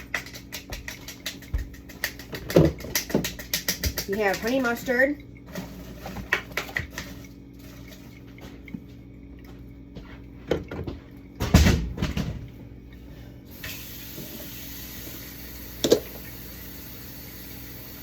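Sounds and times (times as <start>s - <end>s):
containers clicking and knocking: 0.0s - 8.8s, 15.8s - 16.1s
tap water running: 0.0s - 18.0s.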